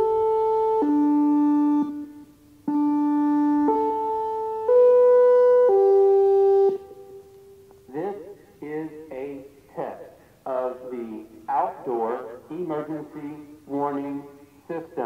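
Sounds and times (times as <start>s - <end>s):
electronic siren chime melody: 2.7s - 7.1s.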